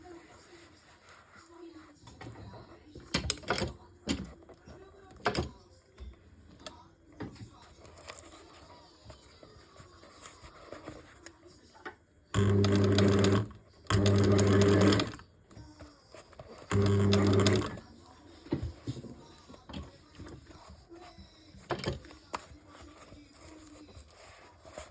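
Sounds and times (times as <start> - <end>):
electric sewing machine stitching: 12.4 - 15.2, 16.7 - 17.8.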